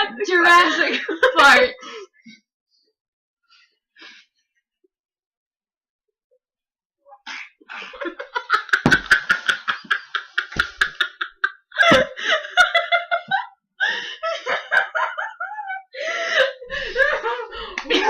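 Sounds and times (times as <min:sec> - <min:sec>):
people laughing hard: 0:07.7 - 0:18.0.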